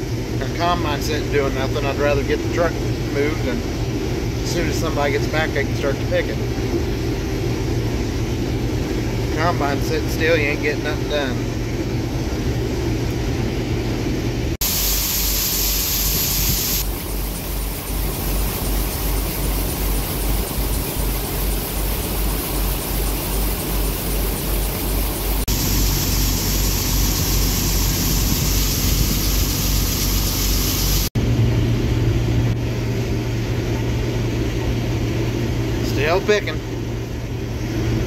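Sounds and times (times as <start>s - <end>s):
combine harvester engine hum: 0.0s - 38.0s
machinery low throb: 0.0s - 38.0s
machinery high hiss: 14.6s - 31.1s.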